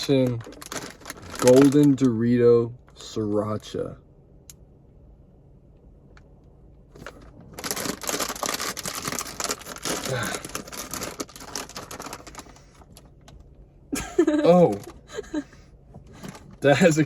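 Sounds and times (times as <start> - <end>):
chip bag crinkling and tearing: 0.0 - 2.2, 7.0 - 13.4.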